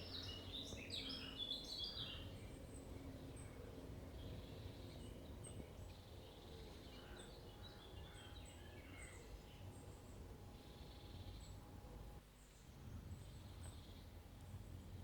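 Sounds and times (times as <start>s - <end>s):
small birds chirping: 0.0s - 11.6s.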